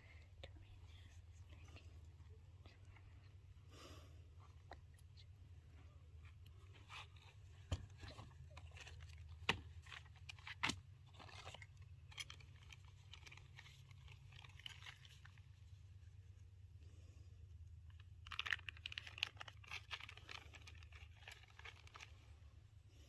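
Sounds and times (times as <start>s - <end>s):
low steady hum: 0.0s - 23.0s
handling crunching and rustling: 4.4s - 16.6s, 17.5s - 23.0s.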